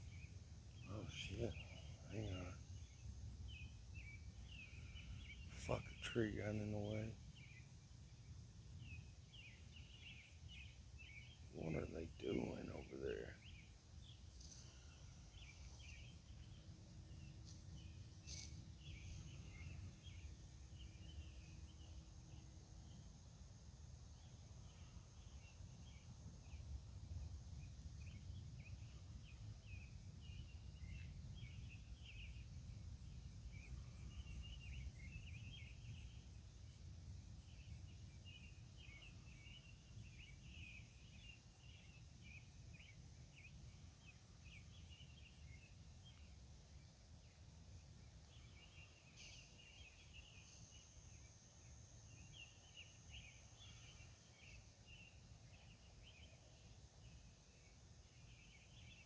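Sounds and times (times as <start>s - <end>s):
distant low rumble: 11.5s - 13.4s.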